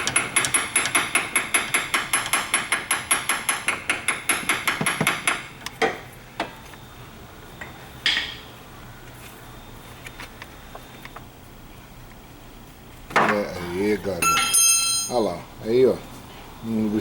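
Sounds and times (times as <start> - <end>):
hammer tapping on metal: 14.2 - 15.2
ringing metallic clink: 14.2 - 15.3.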